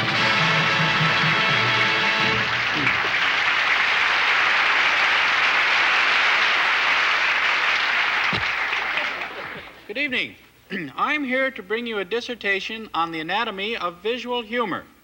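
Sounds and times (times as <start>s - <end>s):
music: 0.0s - 3.1s
studio audience applauding: 0.0s - 9.8s.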